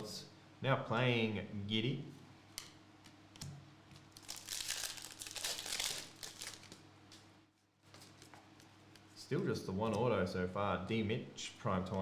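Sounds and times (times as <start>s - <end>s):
foil wrapper crinkling and tearing: 4.0s - 6.8s.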